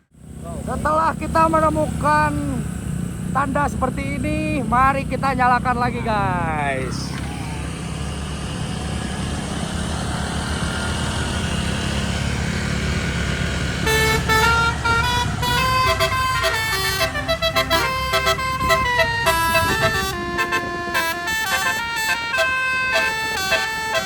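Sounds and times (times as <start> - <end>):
bus engine running: 0.0 - 24.0
air horn playing melody: 13.8 - 24.0.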